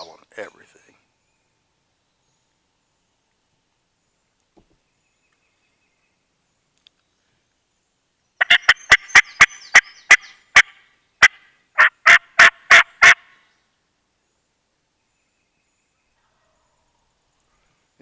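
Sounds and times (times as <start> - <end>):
turkey call yelps: 8.4 - 13.4.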